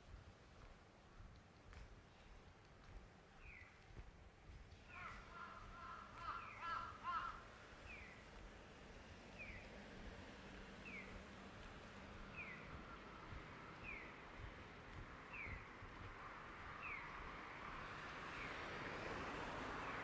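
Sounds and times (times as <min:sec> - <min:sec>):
crow cawing: 0:05.0 - 0:07.4.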